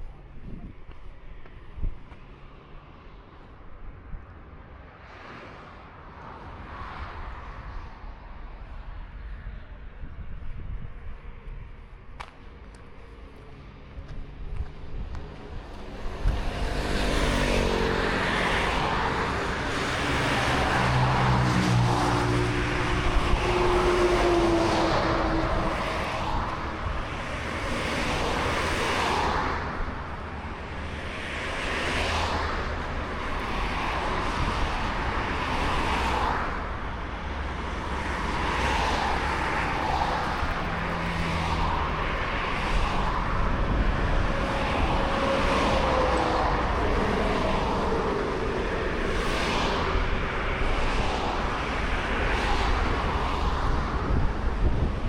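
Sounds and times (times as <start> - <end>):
road traffic noise: 0.0 - 55.0
vehicle passing: 15.4 - 29.8.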